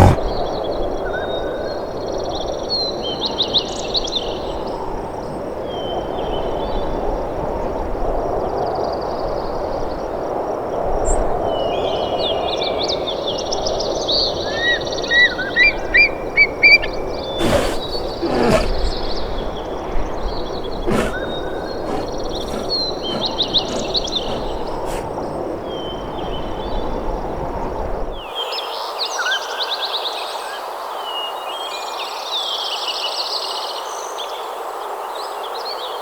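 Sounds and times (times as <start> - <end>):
outdoor background noise: 0.0 - 0.3, 17.4 - 25.2.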